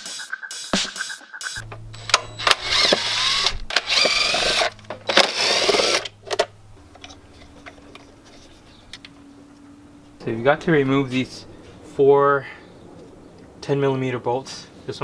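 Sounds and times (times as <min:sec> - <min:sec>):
low steady hum: 0:01.6 - 0:13.6.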